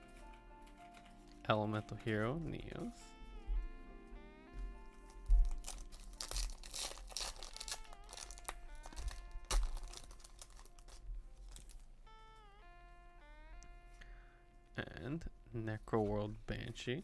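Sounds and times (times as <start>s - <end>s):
background music: 0.0s - 17.0s
foil pack and cards crinkling: 4.8s - 11.9s.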